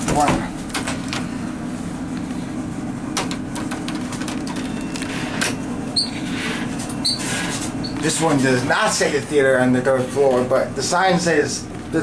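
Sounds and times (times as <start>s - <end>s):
low mechanical hum: 0.0s - 12.0s
elevator arrival chime: 4.5s - 8.2s.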